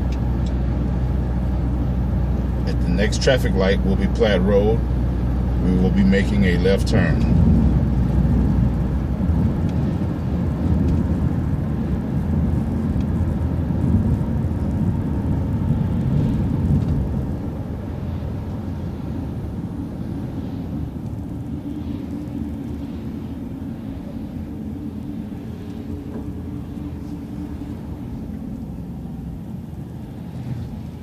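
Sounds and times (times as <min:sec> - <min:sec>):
bus engine and road rumble: 0:00.0 - 0:31.0.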